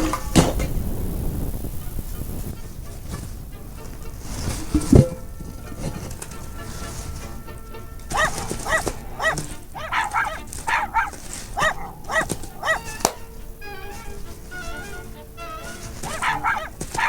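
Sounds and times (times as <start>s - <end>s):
dog barking: 8.0s - 17.0s.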